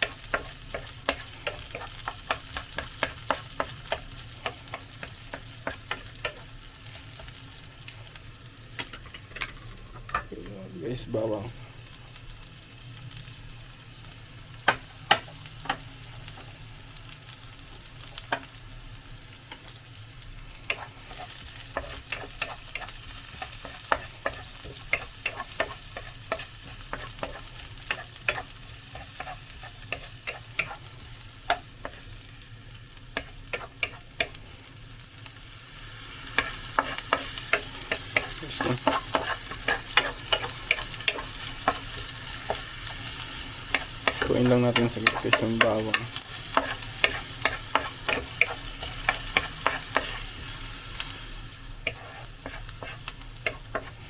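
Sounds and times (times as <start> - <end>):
garlic and onion sizzling in oil: 0.0 - 54.0
utensil scraping a pan: 20.7 - 30.9, 36.3 - 43.0, 43.6 - 50.4, 51.8 - 54.0.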